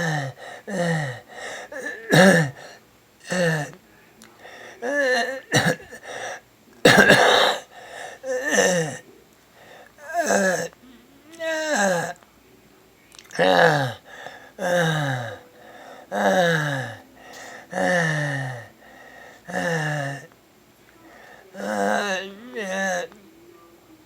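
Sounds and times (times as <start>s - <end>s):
harsh cough-like burst: 0.0s - 3.7s, 4.8s - 9.0s
harsh wheezing breaths: 0.0s - 3.8s, 4.4s - 6.5s, 7.1s - 12.2s, 13.4s - 20.4s, 21.0s - 23.2s.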